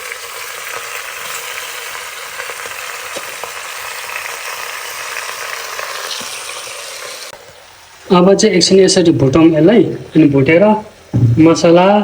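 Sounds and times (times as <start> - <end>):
chicken sizzling in fat: 0.0 - 7.4.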